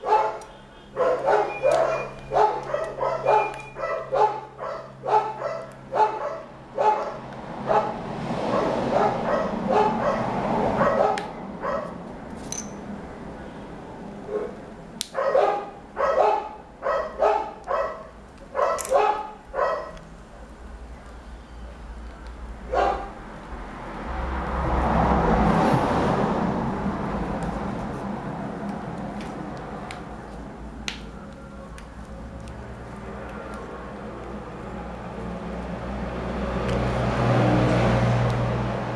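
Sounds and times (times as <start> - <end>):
dog barking: 0.0 - 12.0, 14.3 - 20.0, 22.7 - 23.2.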